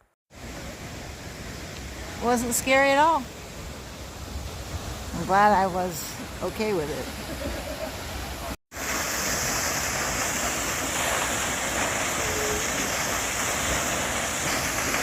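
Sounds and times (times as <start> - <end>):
waterfall rushing: 7.1 - 15.0.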